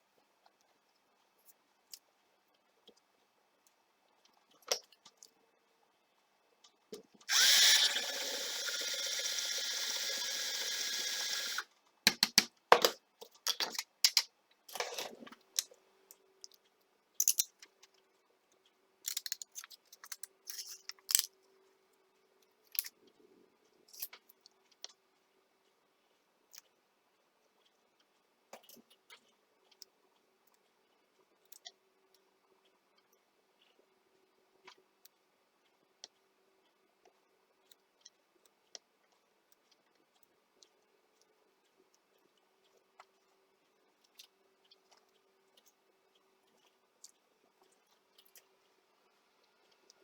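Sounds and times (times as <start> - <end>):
small electric motor running: 7.3 - 11.6
small metal parts clicking: 17.2 - 17.6, 19.0 - 21.3.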